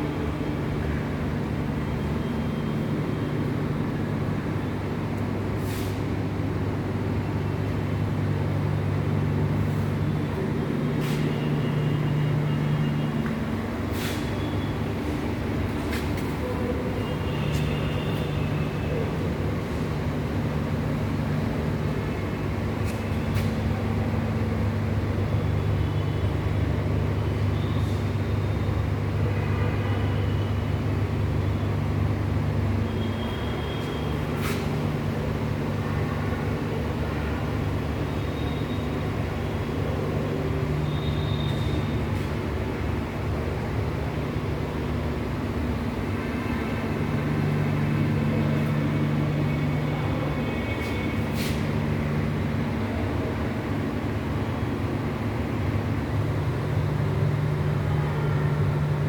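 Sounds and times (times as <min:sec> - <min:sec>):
brief hiss: 0:13.9 - 0:14.3.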